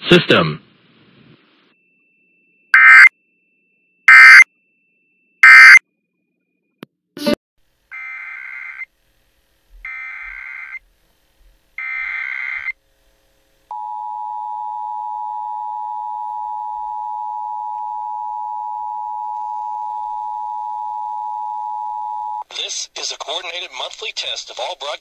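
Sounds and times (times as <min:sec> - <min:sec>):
two-tone attention signal: 0:04.1 - 0:04.5, 0:05.4 - 0:05.8.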